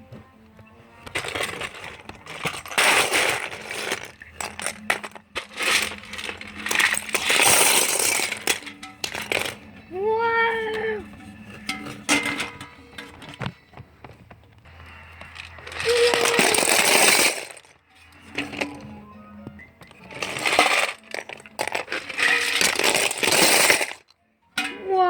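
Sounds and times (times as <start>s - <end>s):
plastic bricks pouring: 1.0s - 9.8s, 14.7s - 18.9s, 19.9s - 24.1s.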